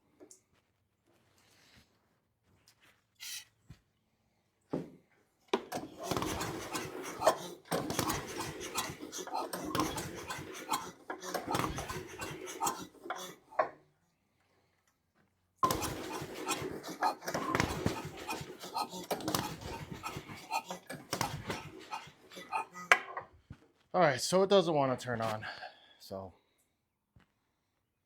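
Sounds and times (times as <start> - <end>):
engine recoil starter pulls: 5.6 - 13.8, 15.6 - 23.0.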